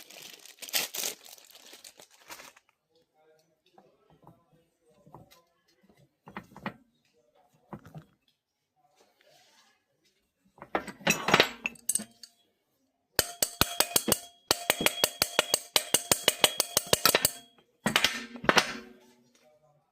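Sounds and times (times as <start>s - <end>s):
metallic clinking and clatter: 10.6s - 12.4s, 13.2s - 19.0s.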